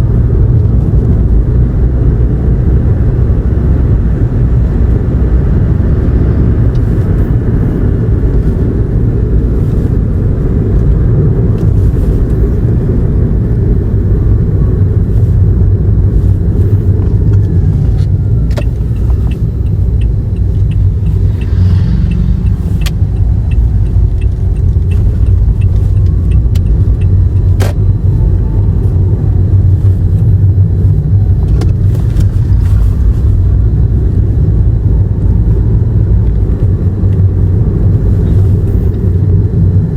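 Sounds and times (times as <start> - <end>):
road and drivetrain rumble: 0.0 - 39.9
sharp clicks: 18.5 - 27.8
even ticking: 18.6 - 27.6.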